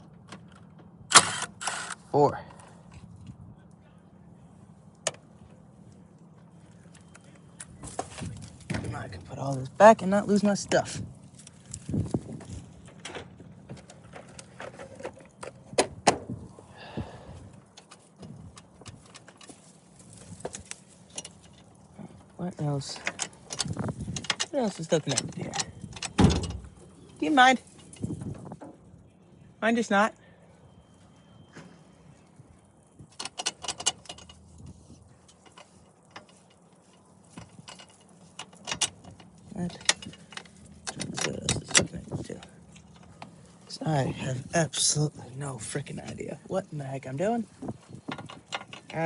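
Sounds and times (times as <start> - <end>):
hand tools clicking and clinking: 22.8 - 26.2, 33.1 - 43.4, 47.8 - 49.0.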